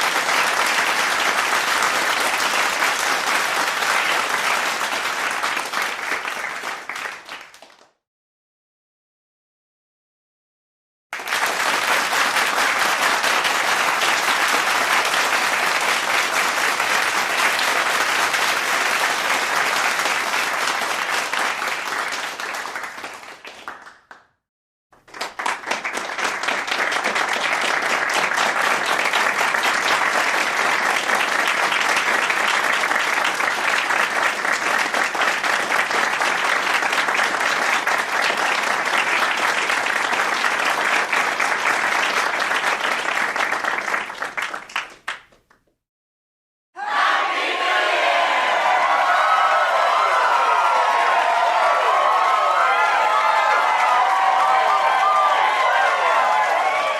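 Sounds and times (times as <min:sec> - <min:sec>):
crowd applause: 0:00.0 - 0:08.0, 0:11.2 - 0:24.3, 0:25.0 - 0:45.4, 0:46.8 - 0:56.9.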